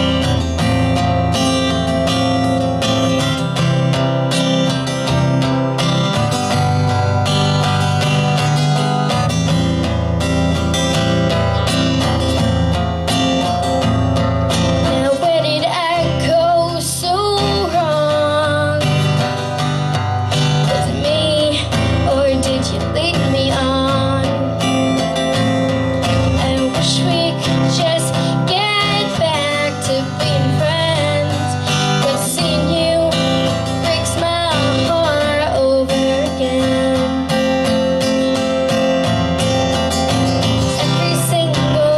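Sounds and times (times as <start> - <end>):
acoustic guitar strumming: 0.0 - 41.9
woman singing: 14.8 - 19.4, 20.4 - 38.2, 40.4 - 41.9.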